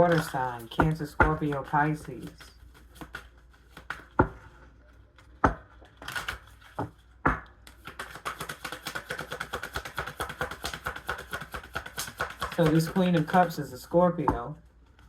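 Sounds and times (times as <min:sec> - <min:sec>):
deck of cards shuffled: 0:00.0 - 0:00.7, 0:01.3 - 0:04.2, 0:07.7 - 0:13.7
cards snapping: 0:06.0 - 0:06.8, 0:07.7 - 0:13.7.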